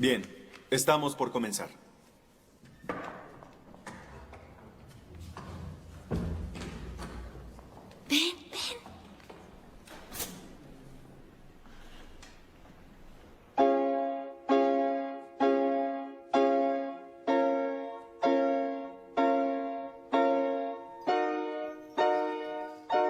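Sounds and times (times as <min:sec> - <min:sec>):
piano chords: 0:13.4 - 0:23.0.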